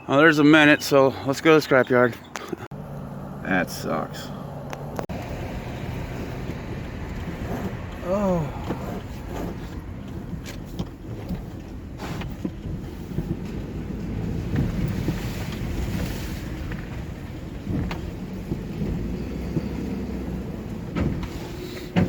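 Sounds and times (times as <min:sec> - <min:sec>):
road and engine rumble: 0:00.0 - 0:22.0
knocks and rattles: 0:16.6 - 0:22.0.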